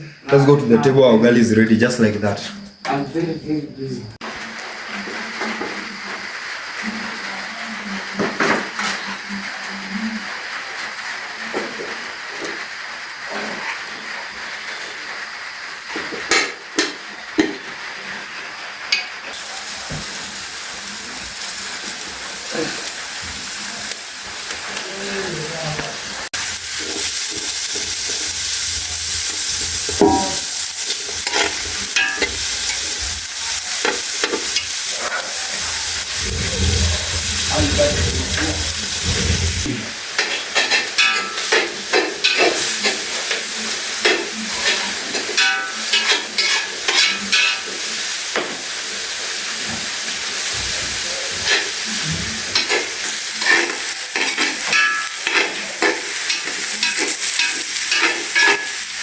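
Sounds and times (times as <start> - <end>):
sizzling hiss: 4.2 - 59.0
metal utensils scraping pot: 29.5 - 47.6, 50.5 - 58.9
low hum: 35.6 - 39.8.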